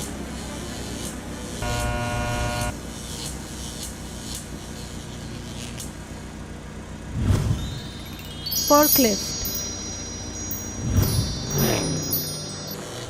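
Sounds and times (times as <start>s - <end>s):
cartoon horn honk: 1.6s - 2.7s
cartoon engine hum: 7.1s - 13.0s.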